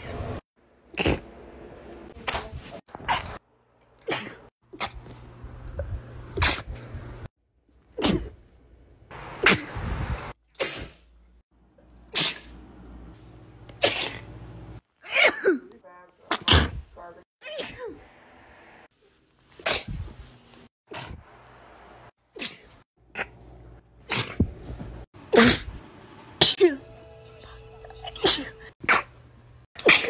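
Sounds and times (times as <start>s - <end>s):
person sneezing: 4.0s - 5.0s, 8.0s - 8.4s, 10.6s - 11.0s, 12.1s - 12.5s, 13.8s - 14.3s, 15.0s - 15.7s, 19.6s - 20.1s, 22.4s - 23.3s, 24.1s - 24.5s, 25.3s - 25.7s, 28.2s - 29.1s, 29.8s - 30.0s.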